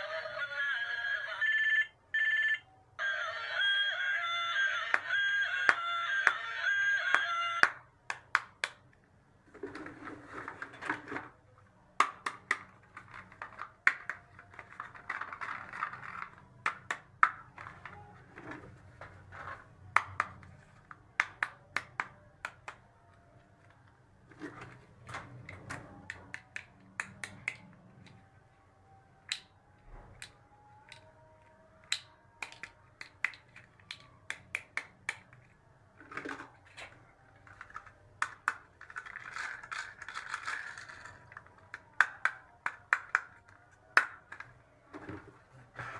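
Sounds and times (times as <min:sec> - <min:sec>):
plastic toy pieces clicking: 0:12.0 - 0:17.9, 0:31.9 - 0:44.5
crinkly rustling: 0:38.7 - 0:41.7.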